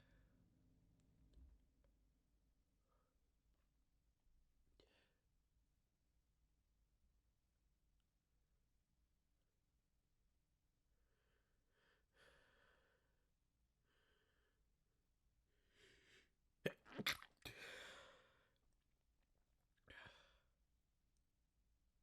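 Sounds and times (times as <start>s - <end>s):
person sneezing: 16.7s - 17.8s.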